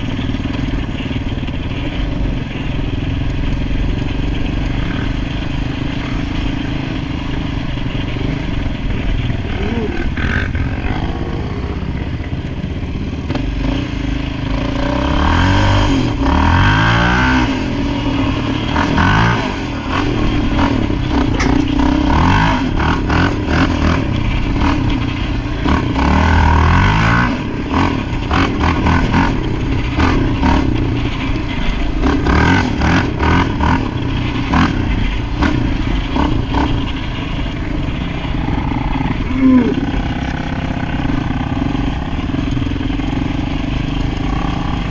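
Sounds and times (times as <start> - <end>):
rattles and knocks over rough ground: 0.0 - 17.1, 18.2 - 44.9
atv engine revving: 0.0 - 44.9.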